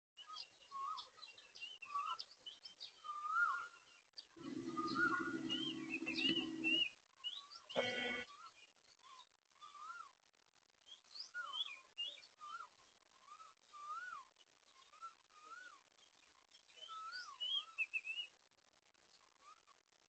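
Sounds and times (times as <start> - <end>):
loud bird call: 4.4 - 6.9, 7.8 - 8.3
low drone: 4.4 - 6.9, 7.8 - 8.2
high bird chirps: 4.4 - 8.5.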